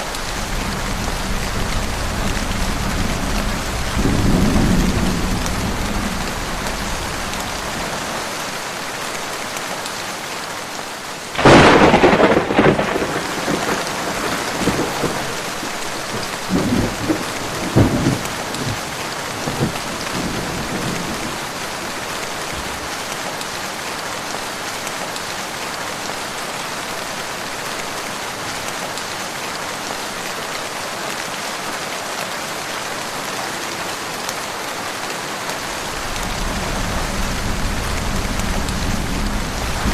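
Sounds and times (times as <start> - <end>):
heavy rain falling: 0.0 - 39.9
thunderclap and rolling rumbles: 0.1 - 8.1, 11.4 - 21.9, 35.7 - 39.9.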